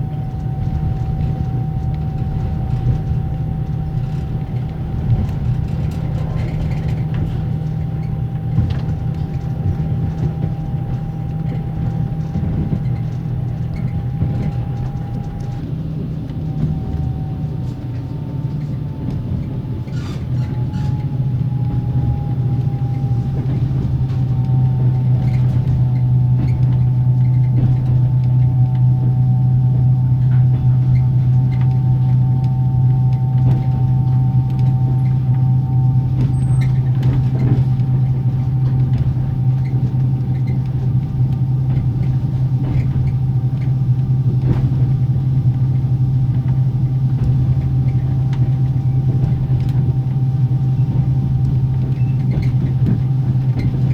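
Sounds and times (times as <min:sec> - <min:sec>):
generator whine: 0:00.0 - 0:53.9
train rumble: 0:00.0 - 0:53.9.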